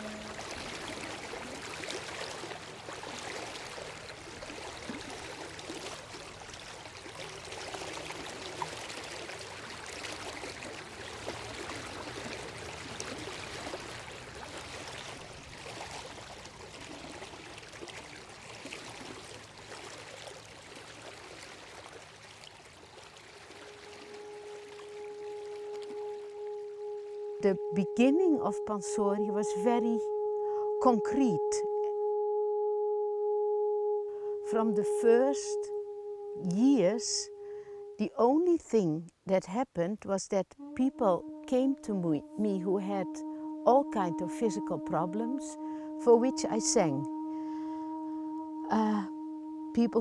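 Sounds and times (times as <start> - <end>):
river water rushing: 0.0 - 21.2.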